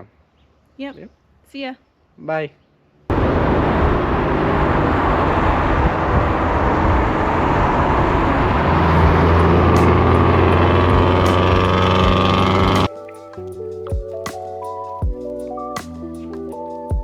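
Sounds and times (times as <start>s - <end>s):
car engine: 3.1s - 12.9s
road noise: 3.1s - 12.9s.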